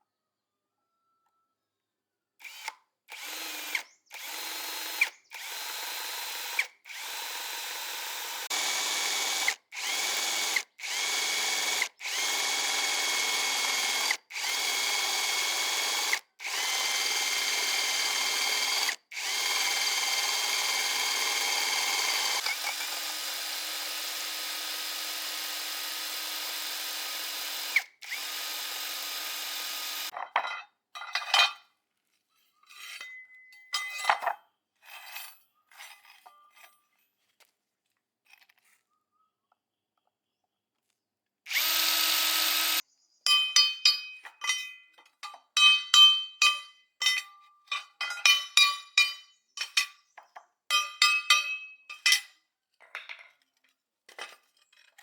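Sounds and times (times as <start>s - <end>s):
power tool motor whine: 2.5s - 30.1s, 41.5s - 42.8s.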